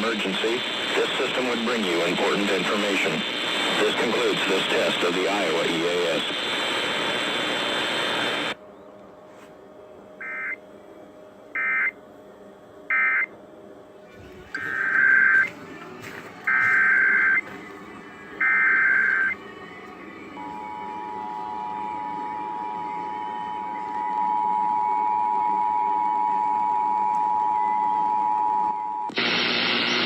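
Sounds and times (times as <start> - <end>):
faint broadcast hum: 0.0 - 30.0
warbling data bursts: 14.5 - 15.5
two-tone attention signal: 14.6 - 15.5, 16.5 - 17.5.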